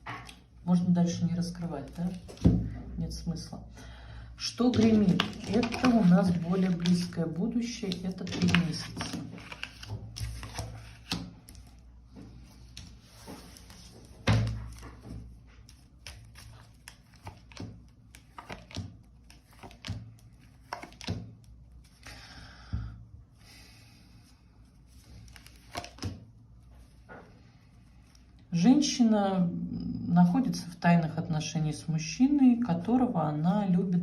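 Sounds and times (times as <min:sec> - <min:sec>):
cards tapping and slapping: 0:04.7 - 0:07.1, 0:07.7 - 0:11.8, 0:12.7 - 0:21.5, 0:25.2 - 0:27.0
cards rustling shuffle: 0:04.7 - 0:22.1, 0:24.7 - 0:28.4.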